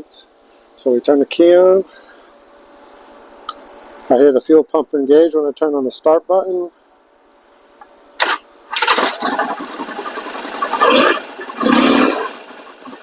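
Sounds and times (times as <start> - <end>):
motorcycle engine starting and running: 8.2 - 13.0.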